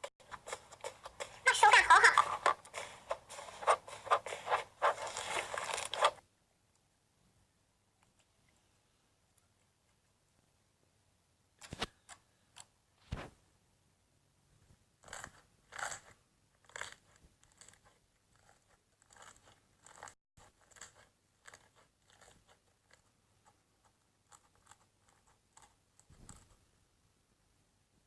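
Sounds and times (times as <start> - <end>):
slime crunching and crackling: 0.2 - 6.2.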